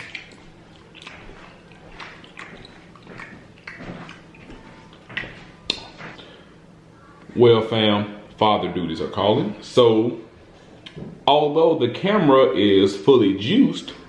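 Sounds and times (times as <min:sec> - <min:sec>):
wet chewing smacks: 0:00.0 - 0:06.3.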